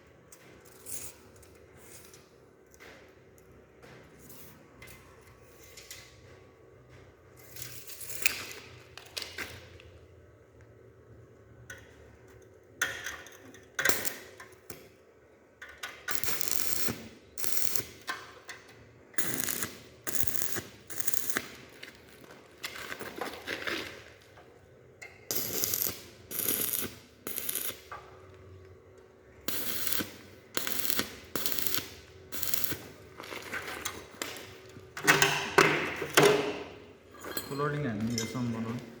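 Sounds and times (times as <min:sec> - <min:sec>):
welding arc crackling and sizzling: 0:04.2 - 0:06.3, 0:07.4 - 0:09.8, 0:12.8 - 0:14.9, 0:15.7 - 0:24.4, 0:25.2 - 0:35.0.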